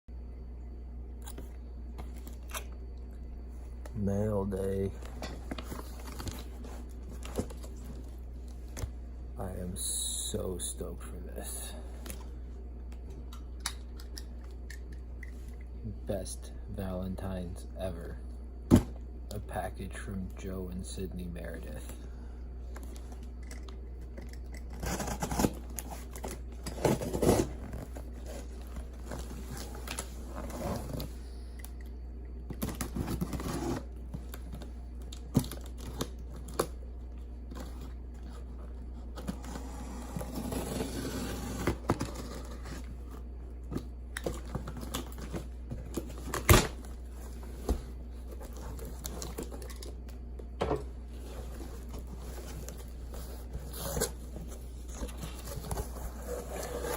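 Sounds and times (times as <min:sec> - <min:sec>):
steady low hum: 0:00.1 - 0:56.9
tape and cardboard tearing: 0:24.7 - 0:28.4, 0:39.2 - 0:42.9.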